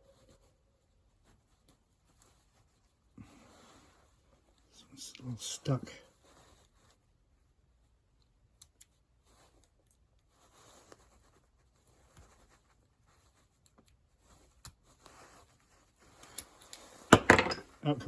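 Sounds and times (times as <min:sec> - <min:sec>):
faint metal clicks and scraping: 0:08.1 - 0:17.8.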